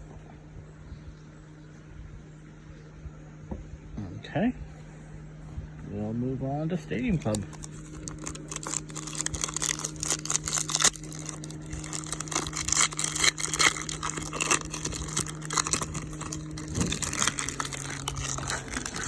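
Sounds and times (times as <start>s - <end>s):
low hum: 0.0s - 19.0s
plastic wrapper crinkling: 7.1s - 19.0s.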